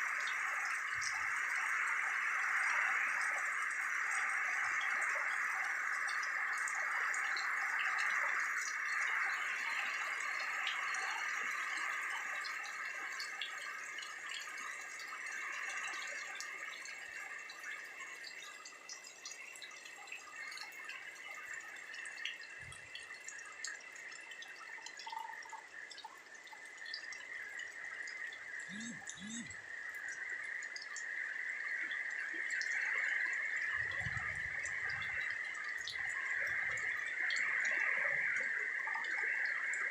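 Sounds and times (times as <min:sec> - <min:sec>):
rain dripping and pattering: 0:00.0 - 0:39.9.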